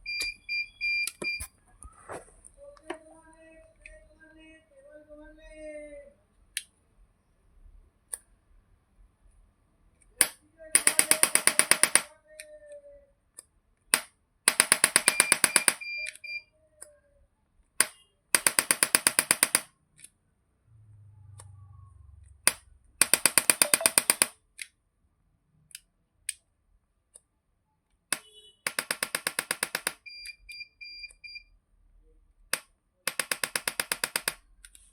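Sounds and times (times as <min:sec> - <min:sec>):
short high beeps: 0:23.6 - 0:24.2
rapid bursts of clicks: 0:32.5 - 0:34.9.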